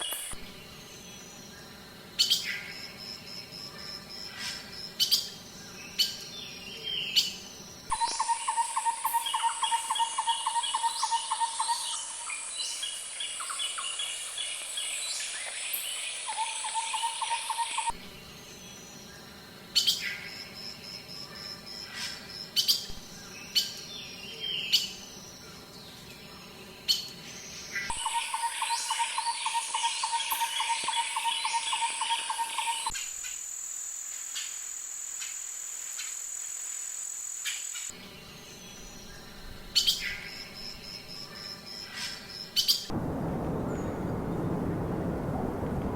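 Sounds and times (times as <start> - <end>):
birds trilling and chirping: 38.0 - 45.9.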